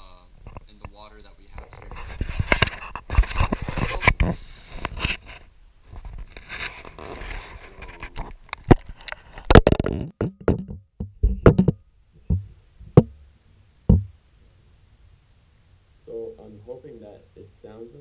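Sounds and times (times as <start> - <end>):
knocks on camera case: 10.2 - 13.2, 13.9 - 14.1.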